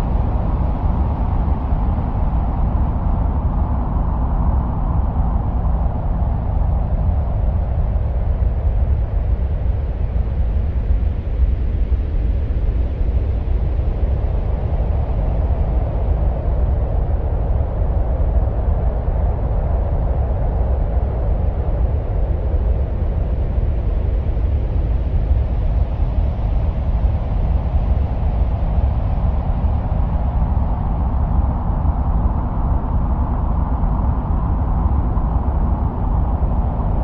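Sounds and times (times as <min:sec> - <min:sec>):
deep wind-like rumble: 0:00.0 - 0:37.0.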